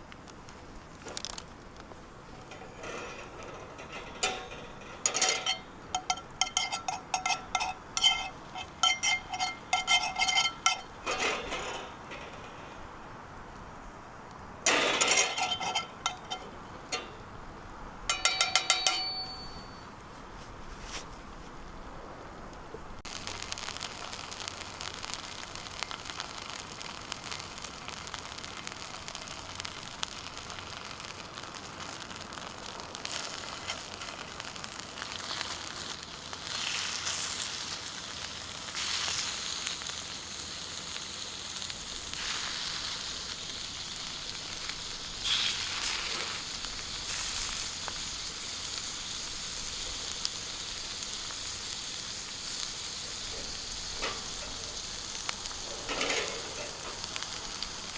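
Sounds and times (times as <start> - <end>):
campfire crackling: 0.0 - 19.8, 22.5 - 57.9
food sizzling in a skillet: 23.1 - 57.9.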